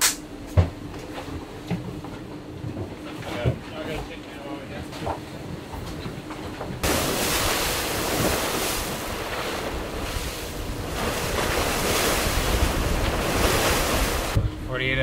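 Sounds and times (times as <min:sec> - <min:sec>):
sea water rushing and splashing: 0:06.8 - 0:14.4
wind buffeting microphone: 0:06.8 - 0:15.0.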